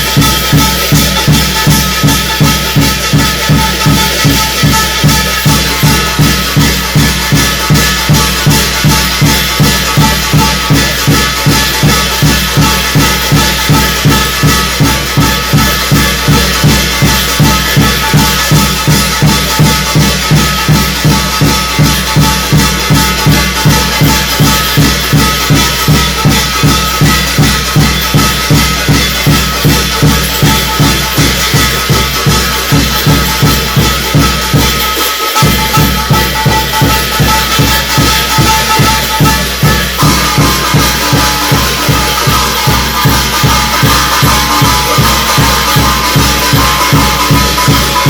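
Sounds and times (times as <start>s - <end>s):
drum beaten in fast rhythm: 0.0s - 48.0s
shimmering cymbals: 0.0s - 48.0s.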